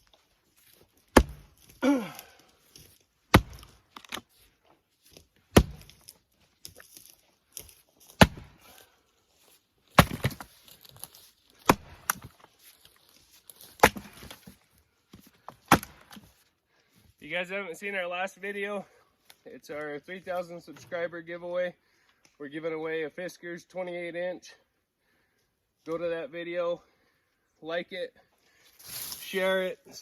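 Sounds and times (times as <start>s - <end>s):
axe chopping firewood: 1.0s - 4.3s, 5.1s - 6.9s, 7.6s - 8.8s, 9.9s - 12.5s, 13.6s - 16.3s.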